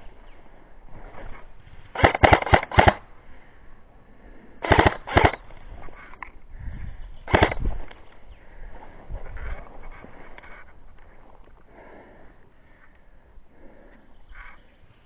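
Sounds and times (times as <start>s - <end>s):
airsoft guns firing: 1.9s - 3.1s, 4.6s - 5.5s, 7.3s - 7.9s.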